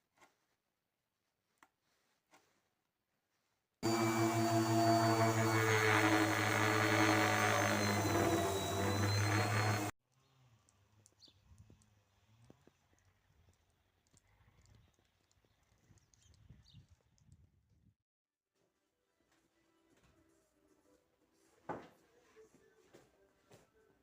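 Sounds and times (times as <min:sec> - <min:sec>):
power tool motor running: 0:03.8 - 0:09.9.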